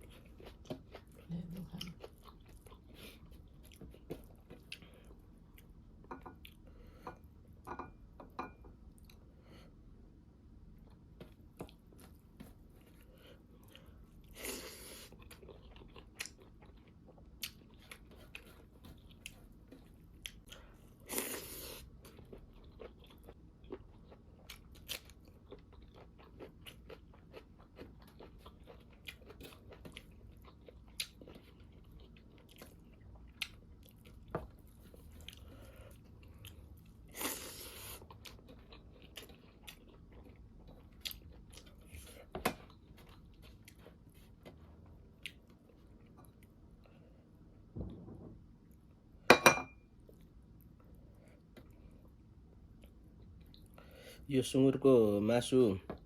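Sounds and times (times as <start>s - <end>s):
chewing and crunching: 0.0s - 6.9s, 10.9s - 47.5s.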